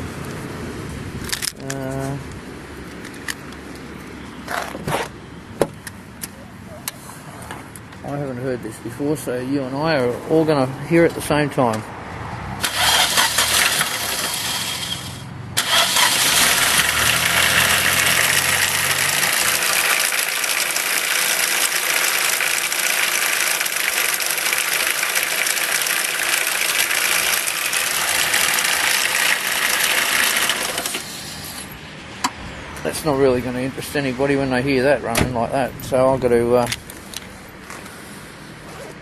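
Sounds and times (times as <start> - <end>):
car engine starting: 12.4 - 39.0
engine rattling: 12.6 - 39.0.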